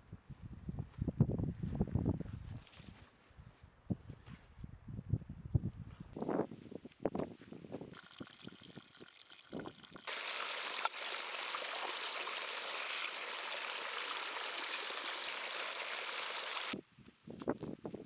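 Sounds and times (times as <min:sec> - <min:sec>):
water running: 0:08.0 - 0:16.8.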